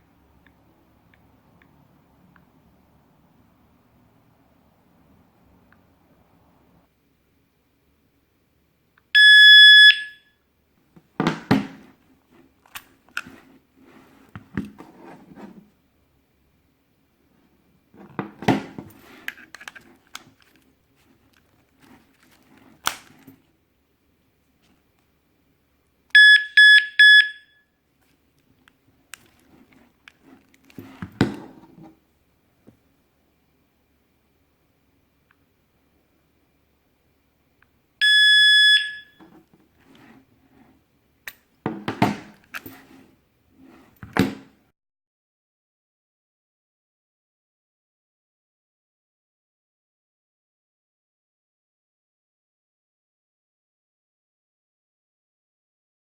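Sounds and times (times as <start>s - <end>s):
high-pitched alarm beep: 9.2s - 10.3s, 26.2s - 27.6s, 38.0s - 39.2s.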